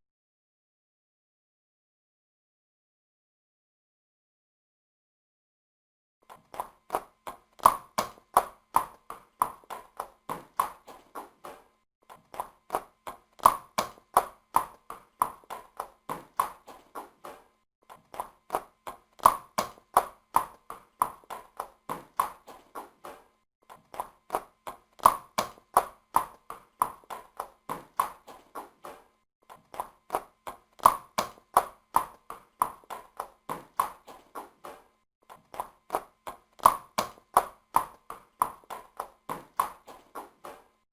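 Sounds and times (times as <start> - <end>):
horse hoofbeats at a run: 23.8 - 40.8.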